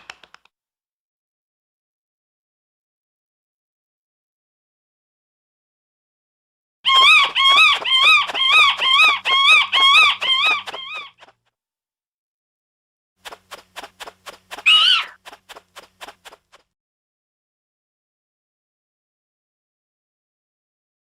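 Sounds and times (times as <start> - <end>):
bat squeaks: 6.9 - 11.3, 14.5 - 15.2.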